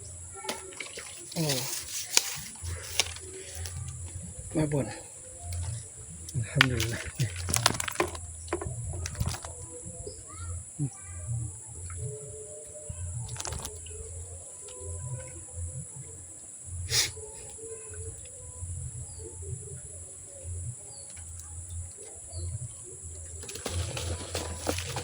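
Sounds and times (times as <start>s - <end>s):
birds calling: 0.0s - 25.0s.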